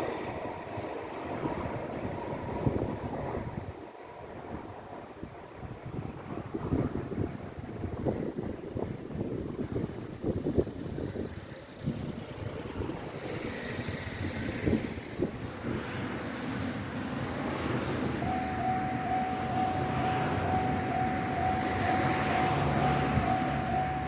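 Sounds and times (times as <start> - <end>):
road vehicle noise: 0.0 - 24.0
level crossing warning bell: 18.2 - 24.0.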